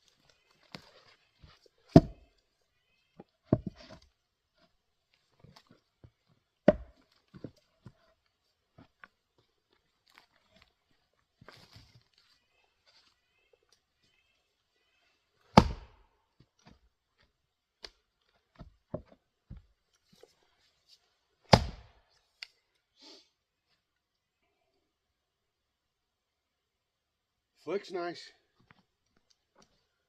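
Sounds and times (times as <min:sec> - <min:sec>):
axe chopping firewood: 0:01.9 - 0:02.3, 0:06.6 - 0:07.5, 0:15.4 - 0:16.8, 0:21.5 - 0:22.0.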